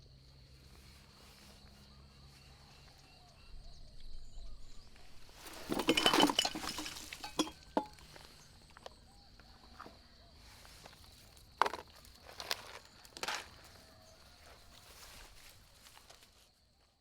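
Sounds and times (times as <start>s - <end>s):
cups and utensils clinking: 5.4s - 8.2s.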